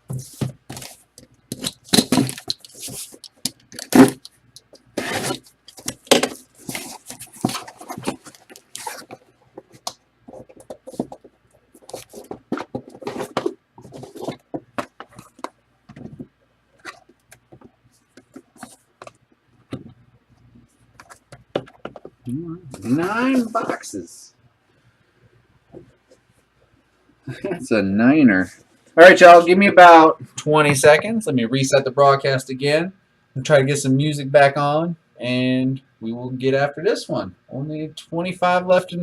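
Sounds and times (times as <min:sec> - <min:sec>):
cardboard and plastic crackling: 0:00.1 - 0:04.3, 0:04.9 - 0:19.9.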